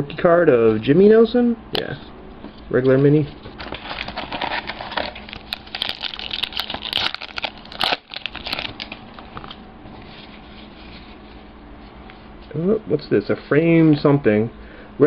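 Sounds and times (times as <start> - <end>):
foil wrapper tearing and crinkling: 3.7 - 9.1.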